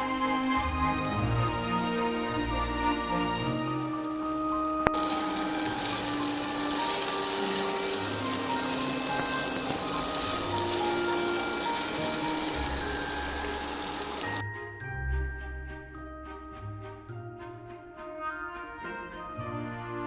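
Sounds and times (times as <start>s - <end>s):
background music with held notes: 0.0s - 20.0s
oil sizzling in a pan: 2.1s - 14.4s.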